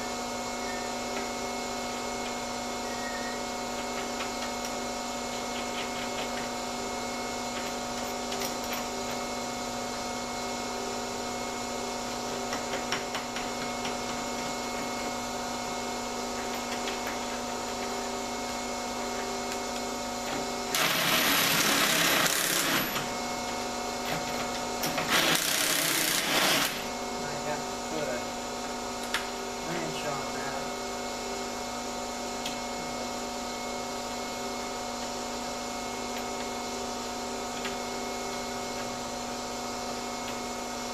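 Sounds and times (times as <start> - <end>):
mechanical hum with tones: 0.0 - 40.9
power tool running: 20.0 - 24.0, 24.6 - 29.0.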